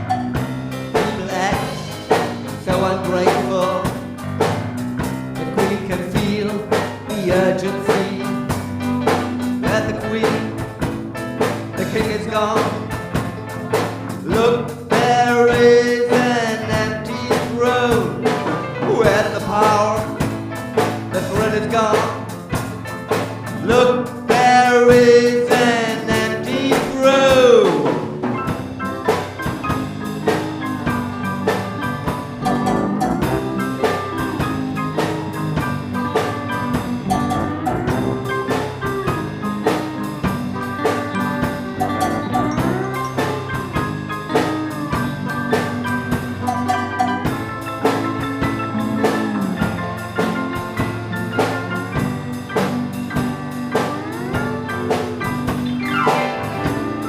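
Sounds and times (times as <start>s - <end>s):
bass: 0.0s - 57.0s
drum kit beat: 0.0s - 57.0s
glockenspiel melody: 55.6s - 57.0s
held note sliding downward: 55.6s - 57.0s.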